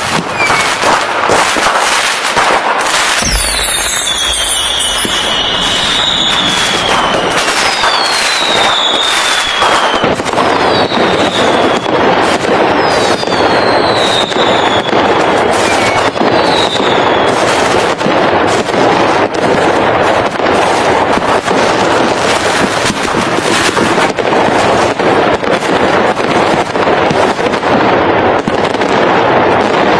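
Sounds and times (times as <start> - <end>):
fireworks crackling and banging: 0.0 - 29.9
firework whistles falling in pitch: 0.2 - 0.8, 3.1 - 17.8.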